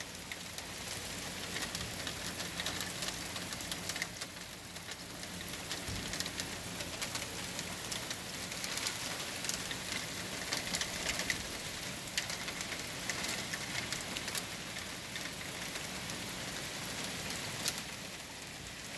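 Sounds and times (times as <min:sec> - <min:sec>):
rain falling: 0:00.0 - 0:18.9.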